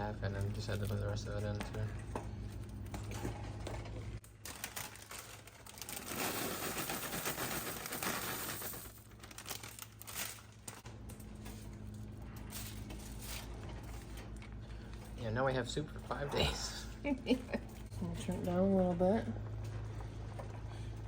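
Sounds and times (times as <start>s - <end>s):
plastic bag crinkling: 4.2s - 15.0s.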